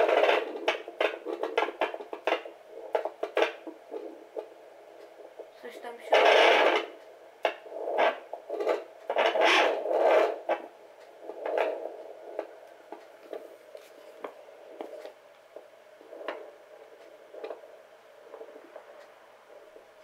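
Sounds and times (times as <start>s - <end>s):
doppler speaker hiss: 4.1s - 8.1s.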